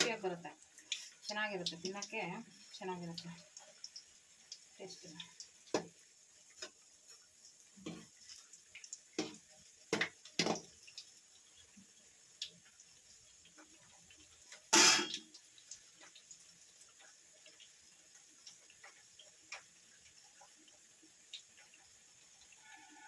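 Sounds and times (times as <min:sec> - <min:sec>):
hot oil hissing and splashing: 0:00.0 - 0:23.0.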